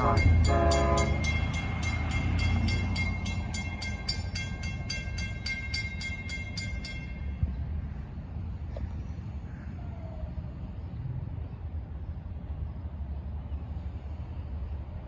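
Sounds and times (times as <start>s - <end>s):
bell ringing: 0.0s - 7.4s
passing train rumble: 0.0s - 15.0s.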